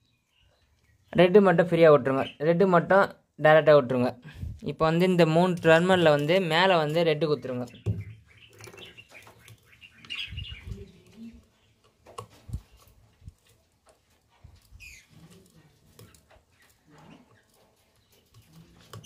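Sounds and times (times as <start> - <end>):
wires rustling and clicking: 4.6 - 19.0.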